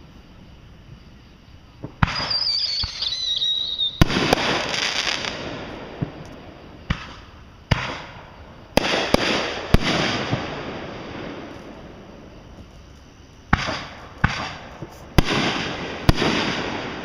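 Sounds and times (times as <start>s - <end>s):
firework bangs: 1.8s - 12.7s, 13.5s - 17.0s
firework crackling: 1.8s - 17.0s
falling firework whistle: 1.9s - 6.2s.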